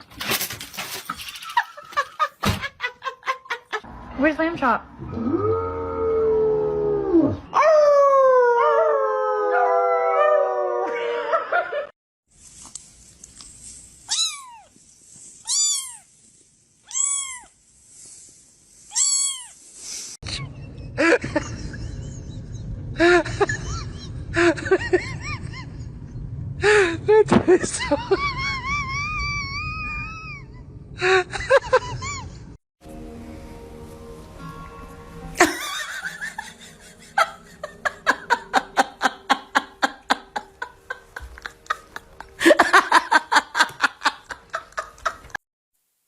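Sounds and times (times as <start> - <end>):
animal howling: 5.0 - 11.6
cat meowing: 14.1 - 14.7, 15.4 - 16.1, 16.9 - 17.5.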